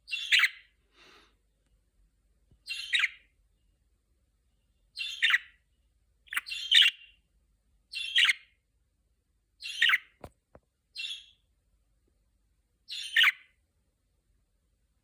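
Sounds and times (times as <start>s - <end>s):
budgerigar raspy chirping: 0.1s - 0.7s, 2.7s - 3.3s, 5.0s - 5.6s, 6.3s - 7.2s, 7.9s - 8.5s, 9.6s - 10.1s, 11.0s - 11.4s, 12.9s - 13.6s.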